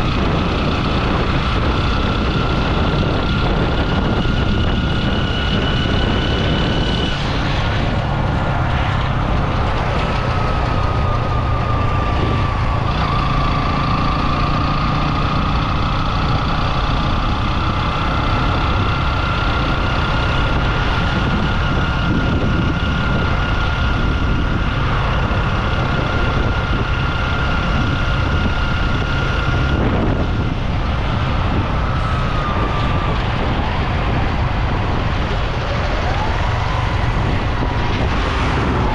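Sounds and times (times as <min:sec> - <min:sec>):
wind buffeting microphone: 0:00.0 - 0:38.9.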